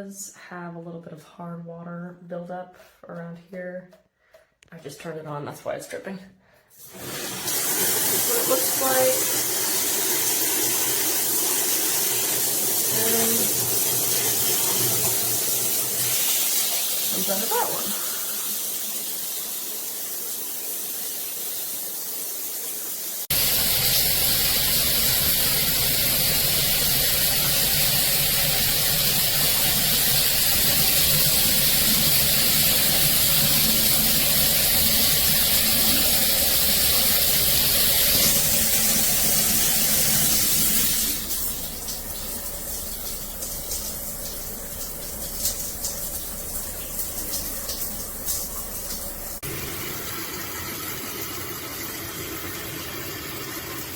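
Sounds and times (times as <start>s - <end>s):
shower water spraying: 6.8s - 53.9s.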